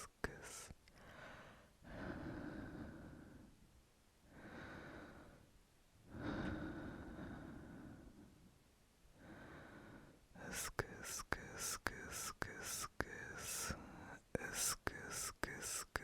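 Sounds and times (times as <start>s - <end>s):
deep human breathing: 1.0s - 3.6s, 4.3s - 5.5s, 6.1s - 8.5s, 9.2s - 10.7s.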